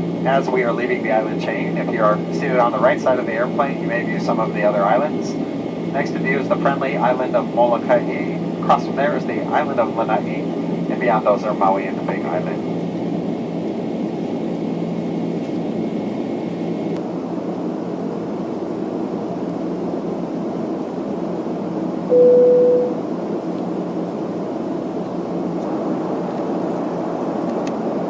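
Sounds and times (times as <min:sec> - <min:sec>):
aircraft cabin engine roar: 0:00.0 - 0:28.0
cabin chime tone: 0:22.1 - 0:23.0.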